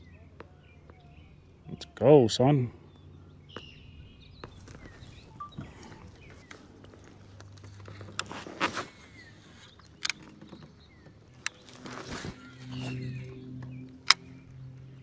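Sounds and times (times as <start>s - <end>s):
faint bird chirps: 2.8s - 8.0s.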